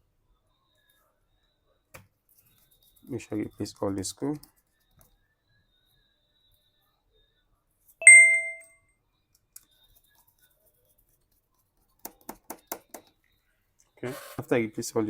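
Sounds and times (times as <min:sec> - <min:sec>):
sharp metallic ding: 0:08.0 - 0:08.7.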